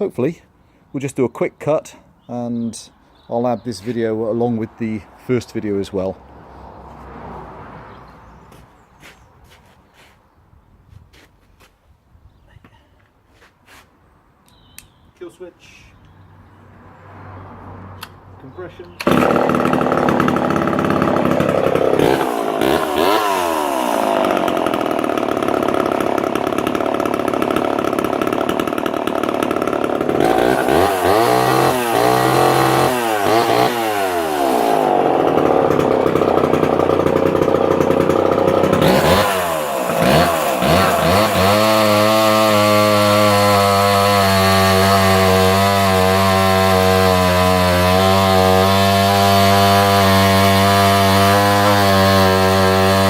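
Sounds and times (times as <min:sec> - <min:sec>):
chainsaw revving: 0:19.0 - 0:53.0.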